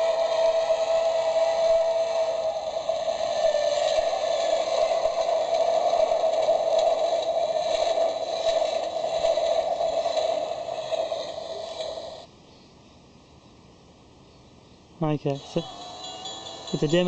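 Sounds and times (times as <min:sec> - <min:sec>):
tinny electronic crossing tone: 0:15.3 - 0:17.0.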